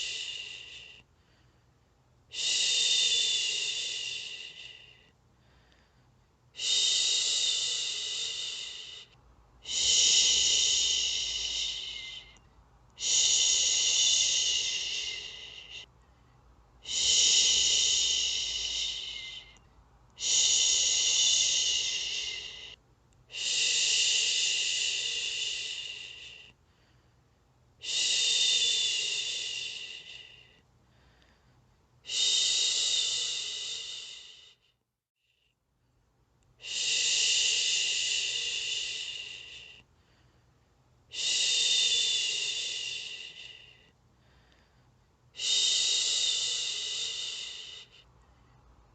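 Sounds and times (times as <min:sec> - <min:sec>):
person shushing: 0:06.6 - 0:12.4, 0:13.0 - 0:15.9, 0:16.8 - 0:19.6, 0:20.2 - 0:26.5.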